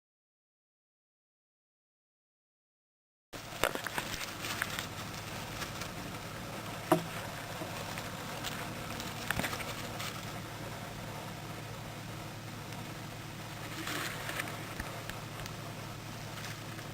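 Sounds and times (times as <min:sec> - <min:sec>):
low hum and hiss: 0:03.4 - 0:16.9.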